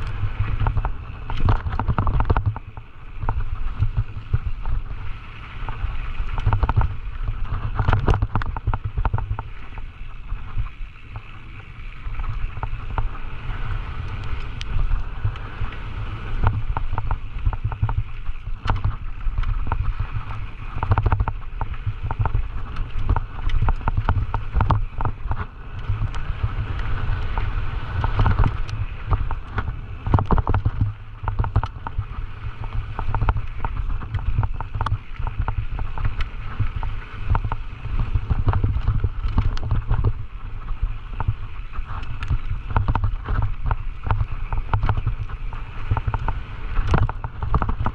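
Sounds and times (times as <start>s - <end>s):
bike rattling over rough trail: 0.0s - 47.9s
wind buffeting microphone: 0.0s - 47.9s.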